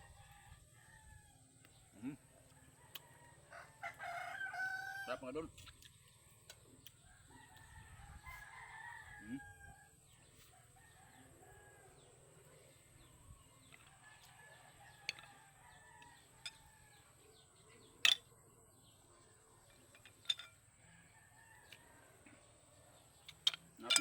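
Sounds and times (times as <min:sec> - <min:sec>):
roosters crowing faintly: 0:06.2 - 0:24.0.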